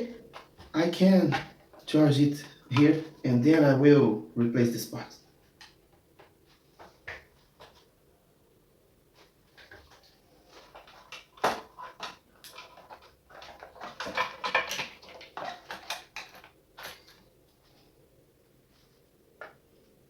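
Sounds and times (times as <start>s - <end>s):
small parts clicking and scraping: 9.6s - 17.3s.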